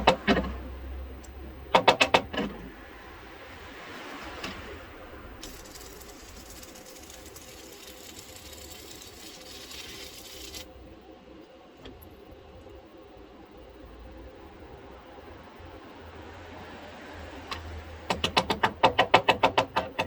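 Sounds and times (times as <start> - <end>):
welding arc hissing: 5.4 - 10.7.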